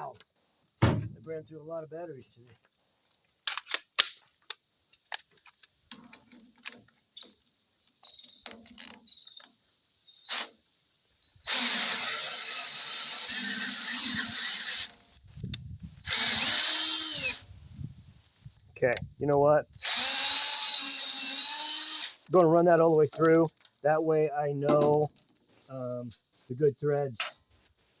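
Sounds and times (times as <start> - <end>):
cordless drill running: 11.4 - 14.9, 16.0 - 17.4, 19.8 - 22.2.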